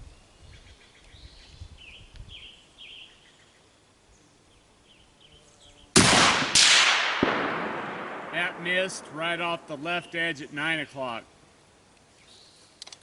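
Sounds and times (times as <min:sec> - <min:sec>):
small birds chirping: 0:00.0 - 0:06.0, 0:12.0 - 0:13.0
rifle shot: 0:06.0 - 0:09.7.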